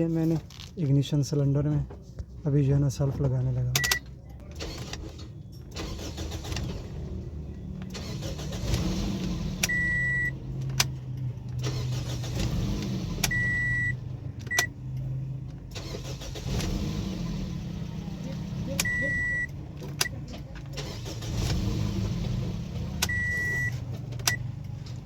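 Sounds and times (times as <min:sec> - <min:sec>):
car engine running: 0:04.4 - 0:25.0
starter motor cranking engine: 0:04.6 - 0:14.0, 0:15.6 - 0:24.8.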